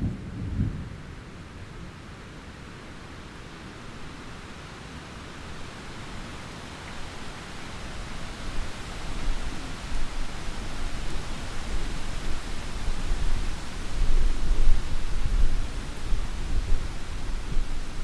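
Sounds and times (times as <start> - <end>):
thunder rumbling: 0.0 - 2.0
rain hissing: 2.6 - 18.0.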